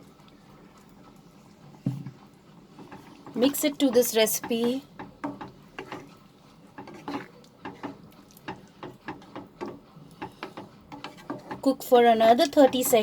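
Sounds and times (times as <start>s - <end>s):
spoon scraping a cooking pan: 1.7s - 13.0s.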